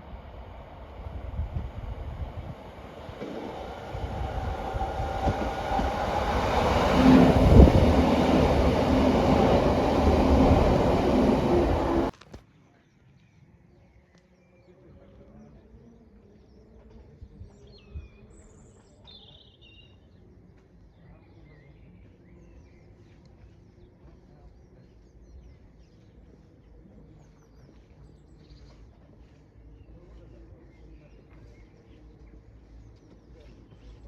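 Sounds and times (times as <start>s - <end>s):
low background rumble: 0.0s - 12.1s.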